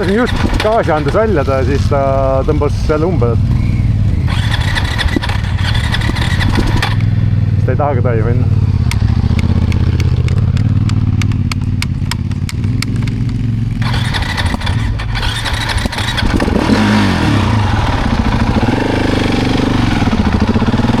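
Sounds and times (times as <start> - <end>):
motorcycle engine running roughly: 0.0 - 21.0
sharp clicks: 4.2 - 7.1, 8.8 - 16.8.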